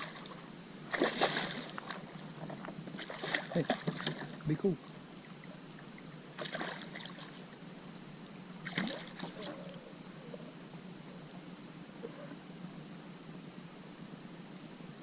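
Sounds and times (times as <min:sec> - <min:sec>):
water splashing: 0:00.0 - 0:02.1, 0:02.9 - 0:04.4, 0:06.4 - 0:07.4, 0:08.6 - 0:09.6.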